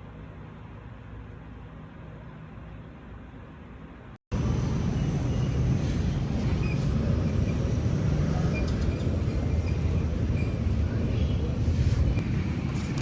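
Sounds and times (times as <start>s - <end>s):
steady low rumble: 4.3s - 13.0s.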